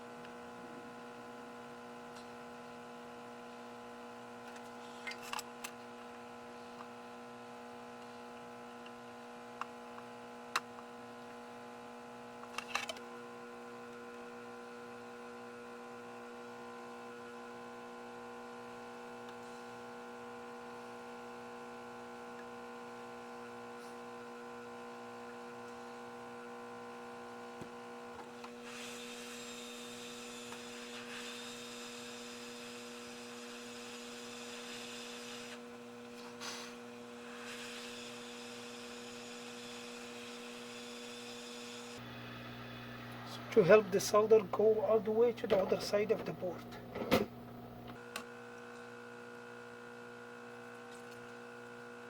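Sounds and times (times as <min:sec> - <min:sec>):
electrical mains hum: 0:00.0 - 0:52.0.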